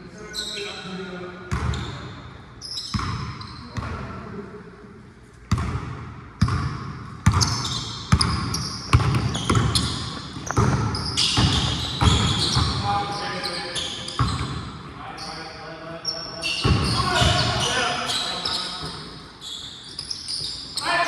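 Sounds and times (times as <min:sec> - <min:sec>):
basketball bouncing on court: 0:01.5 - 0:02.1, 0:02.8 - 0:04.0, 0:05.5 - 0:12.9, 0:14.1 - 0:14.7, 0:16.6 - 0:17.6
sneakers squeaking on court: 0:01.5 - 0:04.0, 0:05.5 - 0:15.4, 0:16.0 - 0:20.9.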